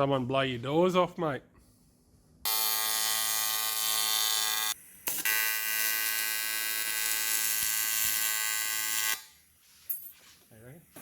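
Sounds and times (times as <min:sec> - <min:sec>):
steady electric buzz: 0:02.5 - 0:09.4.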